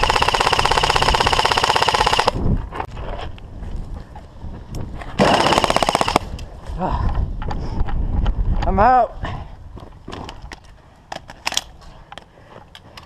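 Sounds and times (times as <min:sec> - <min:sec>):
airsoft gun firing bursts: 0:00.0 - 0:02.4, 0:05.2 - 0:06.3.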